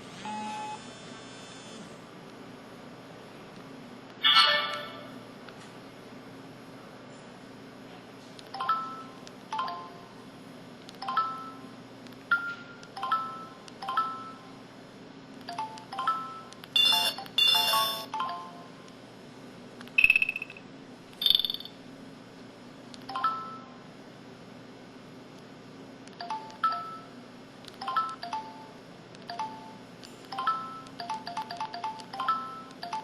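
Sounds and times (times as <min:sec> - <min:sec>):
mobile phone chime tones: 0:16.0 - 0:18.5
high electronic beeps: 0:16.8 - 0:18.1, 0:20.0 - 0:20.6, 0:21.2 - 0:21.7
electronic jingle: 0:16.9 - 0:18.1.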